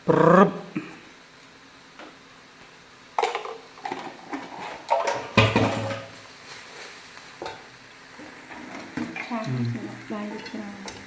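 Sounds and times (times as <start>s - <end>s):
cookware and utensils clattering: 3.2s - 6.2s, 7.4s - 7.7s, 8.5s - 9.5s, 10.2s - 11.0s.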